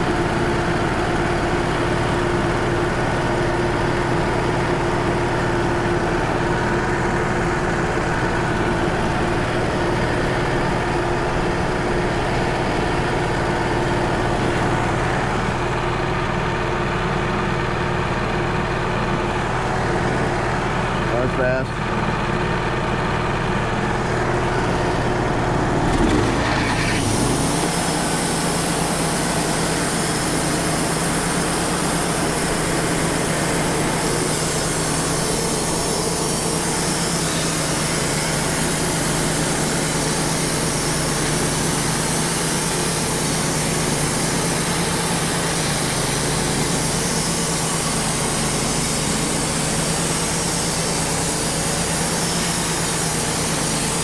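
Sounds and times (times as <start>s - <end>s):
diesel engine hum: 0.0s - 54.0s
band saw cutting log hiss: 25.9s - 54.0s.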